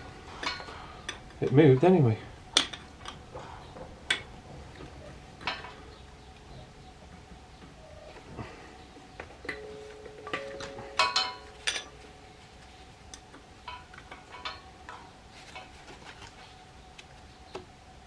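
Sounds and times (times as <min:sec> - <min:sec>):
metal tools clinking on metal: 0:00.4 - 0:01.8, 0:09.4 - 0:12.1, 0:13.1 - 0:15.7.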